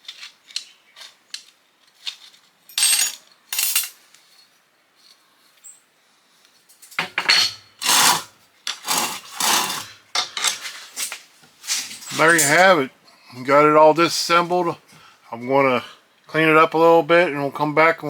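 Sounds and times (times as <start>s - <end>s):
small metal parts clattering: 2.0s - 4.0s, 6.8s - 12.8s.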